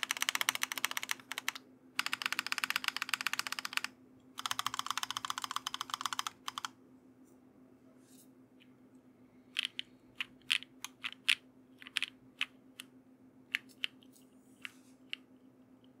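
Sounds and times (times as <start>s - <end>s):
mechanical keyboard typing: 0.0s - 6.7s, 9.6s - 12.5s.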